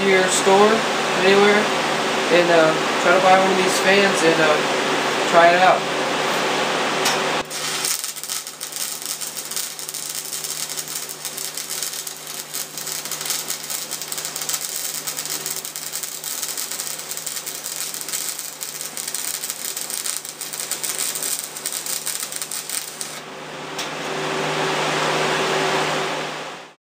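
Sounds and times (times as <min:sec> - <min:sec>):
electric fan humming: 0:00.0 - 0:26.8
welding arc crackling: 0:07.4 - 0:23.3.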